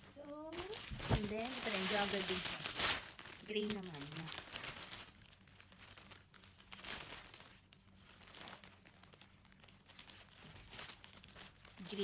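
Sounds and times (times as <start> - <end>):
clothing rustling: 0.1 - 3.3.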